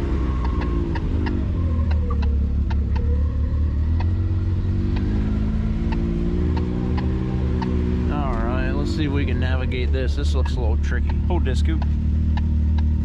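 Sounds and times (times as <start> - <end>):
sharp clicks and ticks: 0.0 - 3.1, 3.8 - 4.2, 4.8 - 13.0
utility vehicle engine at low revs: 0.0 - 13.0.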